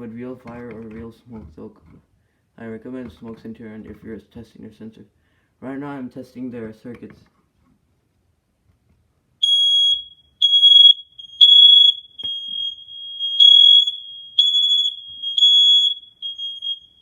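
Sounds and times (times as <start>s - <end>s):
distant steady alarm tone: 9.4s - 17.0s
smoke alarm shrill beeps: 9.4s - 17.0s.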